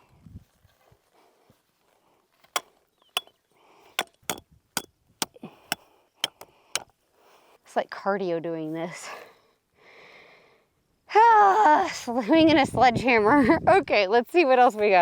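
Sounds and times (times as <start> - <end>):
sledgehammer striking a stake: 2.5 - 3.3, 4.0 - 6.9.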